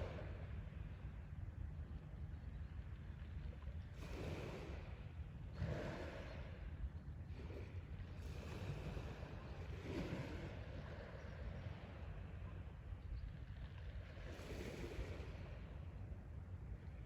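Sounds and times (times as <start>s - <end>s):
wind rumble on microphone: 0.0s - 17.0s.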